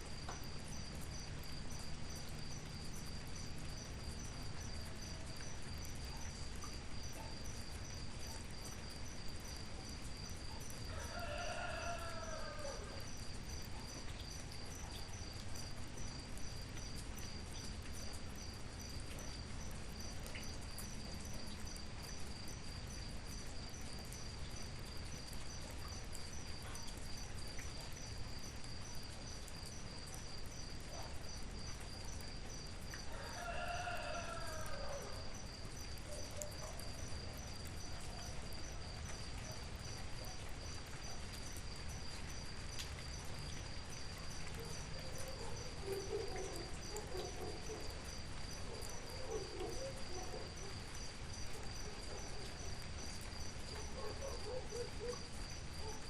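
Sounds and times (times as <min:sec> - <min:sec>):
crickets chirping: 0:00.0 - 0:56.0
rain hiss: 0:00.0 - 0:56.0
rooster crowing: 0:10.9 - 0:13.0, 0:33.1 - 0:35.3.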